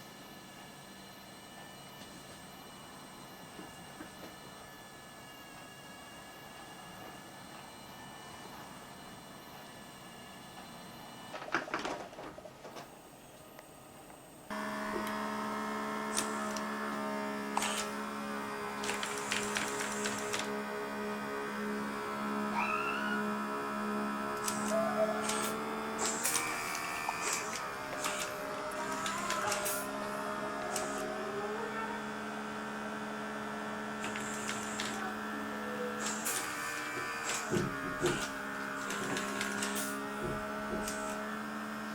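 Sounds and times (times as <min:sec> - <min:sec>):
small electric motor whine: 0:14.5 - 0:41.9.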